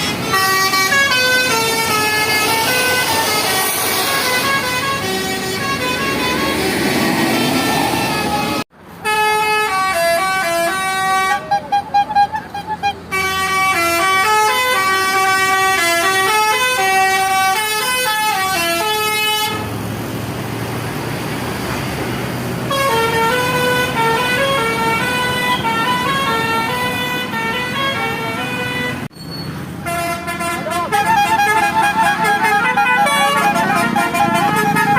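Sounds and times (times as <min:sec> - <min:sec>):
musical vehicle horn: 0:00.0 - 0:19.8, 0:22.7 - 0:29.1, 0:29.8 - 0:34.9
traffic noise: 0:00.0 - 0:34.9.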